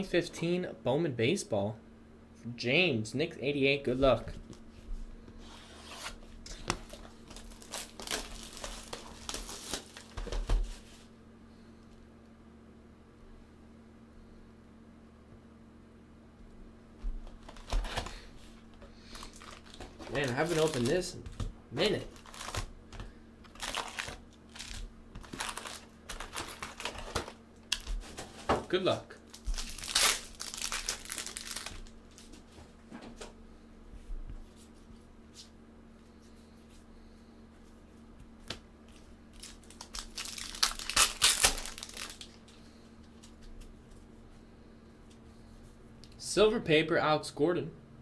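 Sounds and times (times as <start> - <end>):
cellophane and cardboard rustling: 5.4 - 11.1, 17.2 - 32.9, 38.4 - 43.4
plastic wrapping crinkling and tearing: 6.5 - 10.8, 17.4 - 28.5, 29.2 - 32.4, 38.9 - 42.6.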